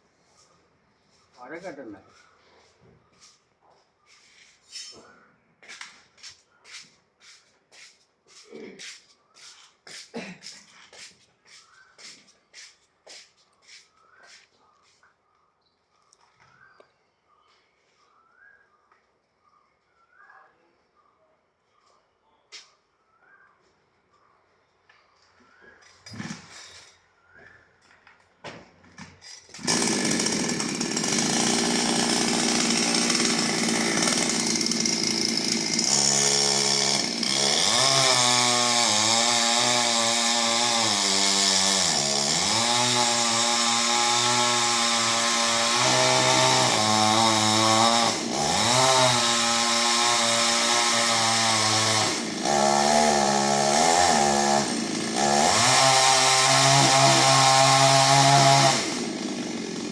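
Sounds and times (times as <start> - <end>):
chainsaw cutting wood: 26.0 - 27.0, 28.8 - 59.9.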